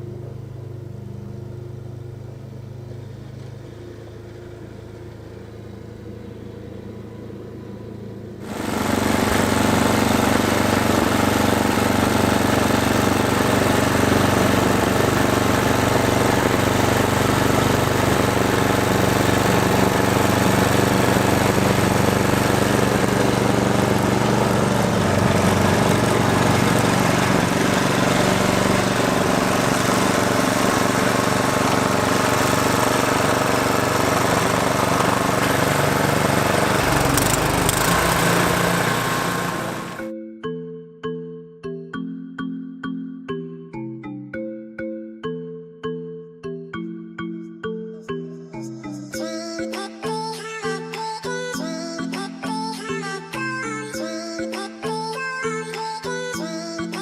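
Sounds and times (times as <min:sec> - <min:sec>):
snow blower engine running: 0:08.0 - 0:40.1.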